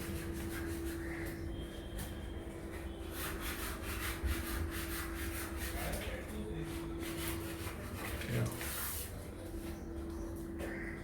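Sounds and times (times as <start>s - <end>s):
sandpaper rubbing on wall: 0.0s - 1.1s, 3.0s - 9.2s.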